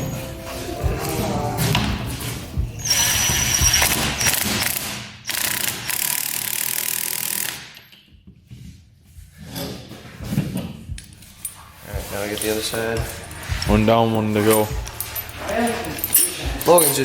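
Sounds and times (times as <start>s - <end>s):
impact wrench running: 1.7s - 7.8s.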